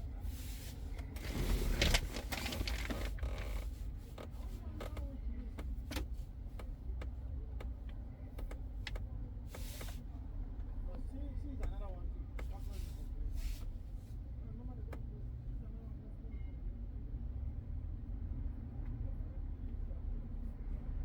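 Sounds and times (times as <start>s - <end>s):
rustling: 0.5s - 3.7s.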